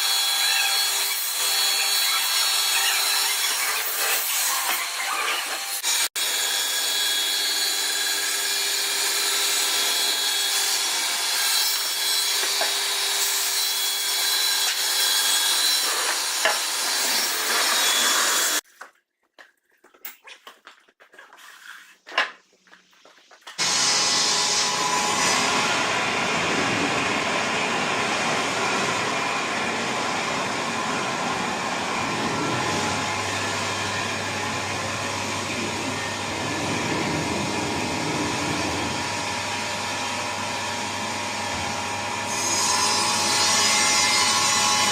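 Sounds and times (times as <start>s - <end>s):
saw blade cutting timber: 0.0s - 18.6s.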